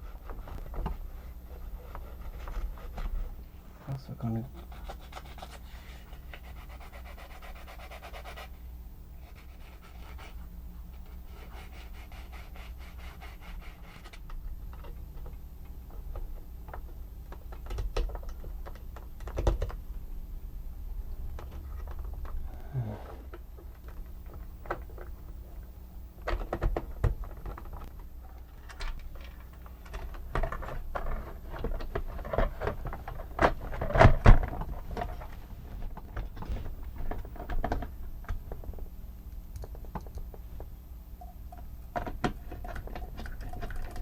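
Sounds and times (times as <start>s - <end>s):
steady low hum: 0.0s - 44.0s
plastic parts clicking and rattling: 26.2s - 35.2s.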